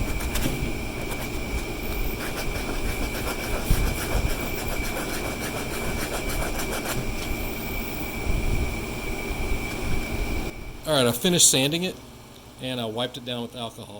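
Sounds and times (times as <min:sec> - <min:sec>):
sanding plastic: 0:00.0 - 0:07.4
high-pitched whine: 0:00.0 - 0:12.0.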